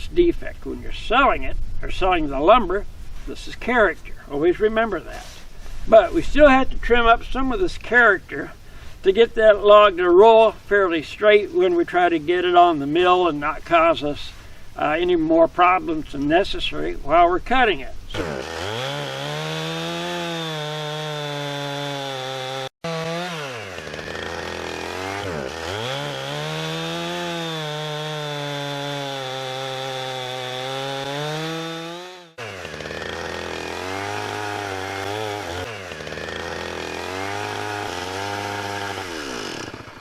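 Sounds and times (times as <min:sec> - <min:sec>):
chainsaw cutting wood: 0:18.1 - 0:40.0.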